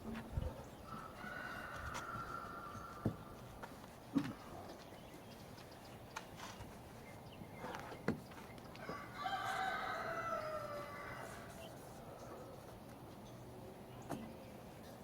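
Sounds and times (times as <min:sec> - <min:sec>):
rooster crowing: 0:00.8 - 0:03.1, 0:08.8 - 0:11.6.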